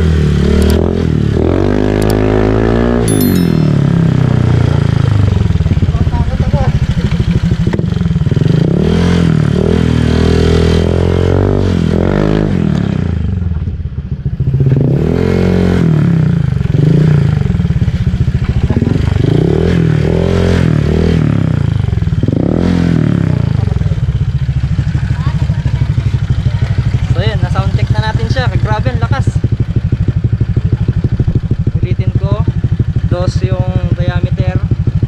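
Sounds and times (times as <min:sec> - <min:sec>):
scooter engine revving: 0:03.7 - 0:28.7.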